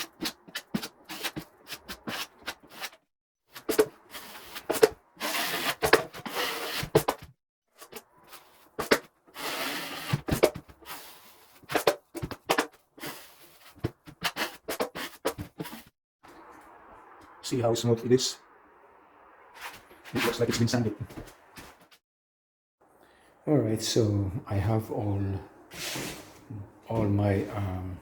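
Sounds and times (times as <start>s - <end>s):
drywall knife scraping compound: 0.0s - 7.2s, 7.8s - 15.9s, 25.7s - 26.5s.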